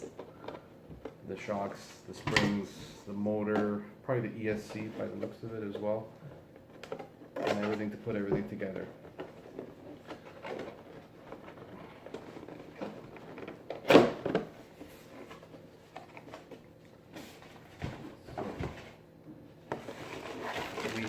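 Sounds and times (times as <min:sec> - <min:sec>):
cardboard box and bags rustling: 0:19.8 - 0:21.0.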